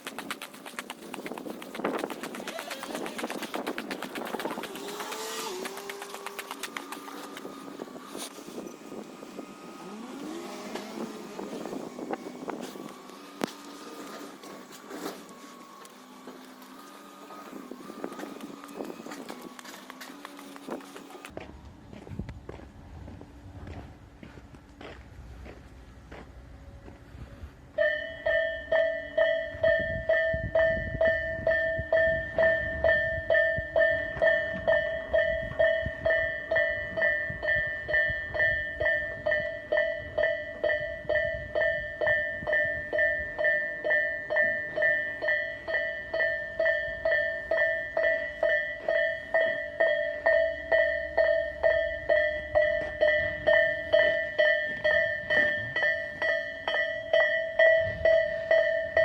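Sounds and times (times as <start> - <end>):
low rumble of passing train: 7.3 - 59.0
level crossing warning bell: 27.7 - 59.0.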